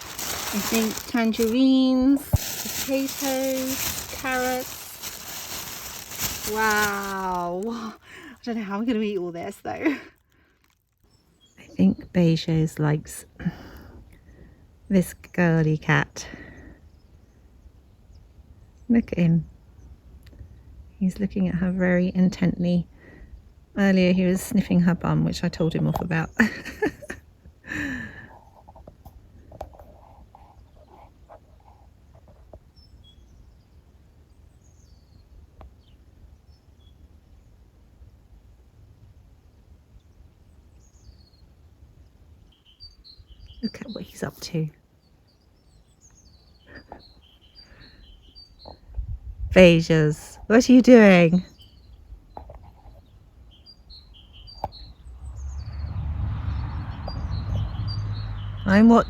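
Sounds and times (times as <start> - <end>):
small birds chirping: 0.0 - 38.2, 39.0 - 59.0
faint high bird chirps: 51.4 - 55.9
steady low rumble: 54.9 - 59.0.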